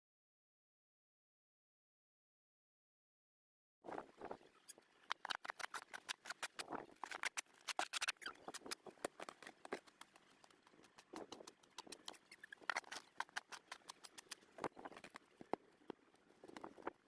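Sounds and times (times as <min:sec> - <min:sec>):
crunching clicks: 0:05.1 - 0:17.0.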